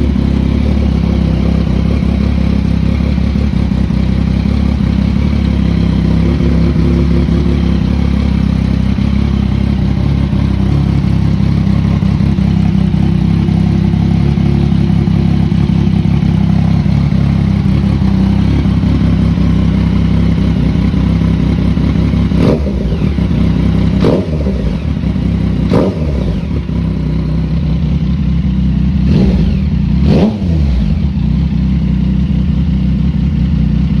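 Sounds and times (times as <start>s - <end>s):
motorcycle throttle blips: 0.0s - 33.9s
motorcycle engine idling: 0.0s - 34.0s.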